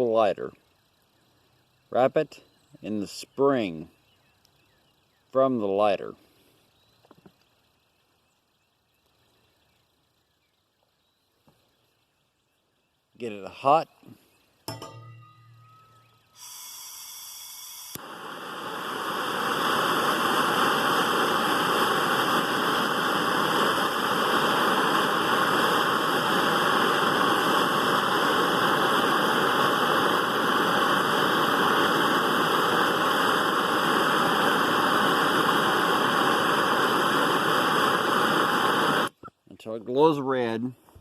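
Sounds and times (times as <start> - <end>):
gas flame hissing: 14.7 - 39.2.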